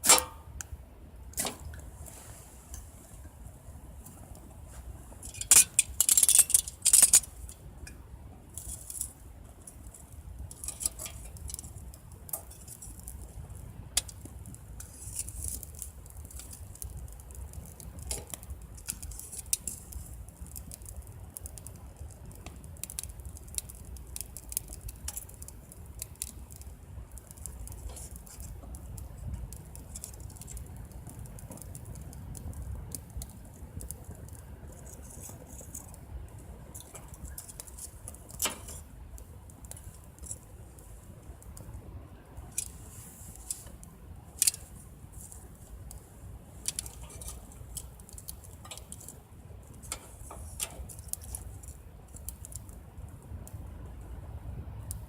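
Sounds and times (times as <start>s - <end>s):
wood fire crackling: 0.0s - 55.0s
sharp pops and clicks: 9.7s - 41.8s.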